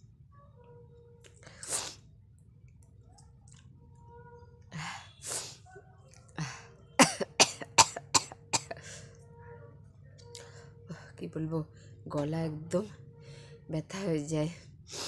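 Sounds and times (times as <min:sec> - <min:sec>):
person coughing: 0:06.4 - 0:08.9.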